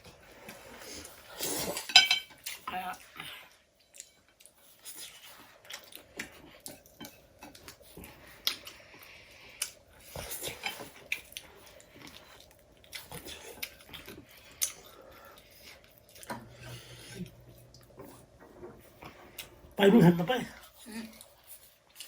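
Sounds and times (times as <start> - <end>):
people chewing noodles: 0.0 - 22.0
cutlery clicking and scraping plates: 1.7 - 2.4.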